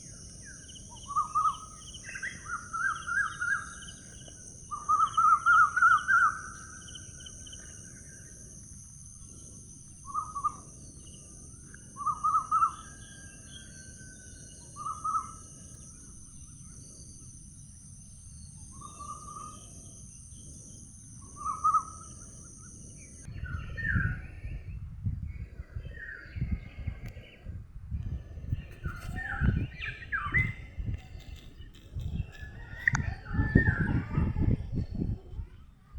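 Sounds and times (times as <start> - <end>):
low gusty rumbling: 23.3 - 35.9.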